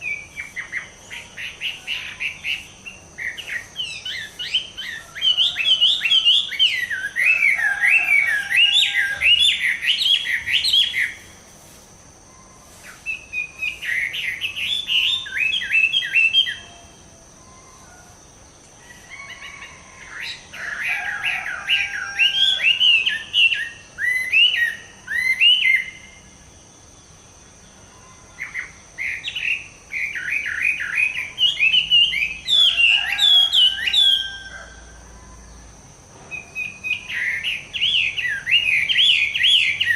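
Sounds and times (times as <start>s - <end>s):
bird singing whistled notes: 0.0s - 11.3s, 12.3s - 18.0s, 20.1s - 26.3s, 27.9s - 35.7s, 36.3s - 39.9s.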